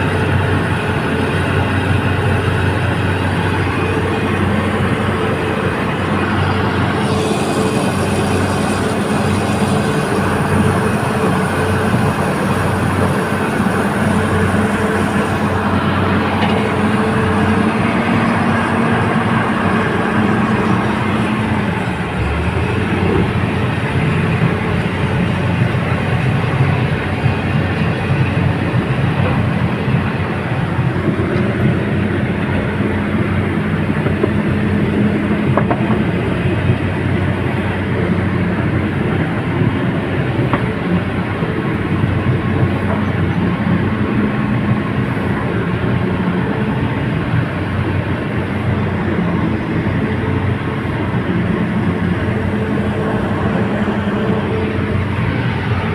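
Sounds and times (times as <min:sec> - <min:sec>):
heavy diesel machinery rattling: 0:00.0 - 0:55.9.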